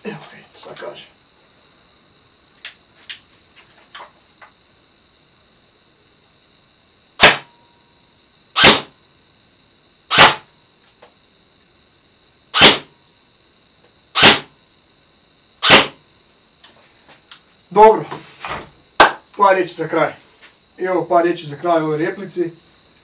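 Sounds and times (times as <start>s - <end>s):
airsoft rifle shots: 7.2s - 7.5s, 8.6s - 8.9s, 10.1s - 10.5s, 12.6s - 12.9s, 14.2s - 14.5s, 15.6s - 16.0s.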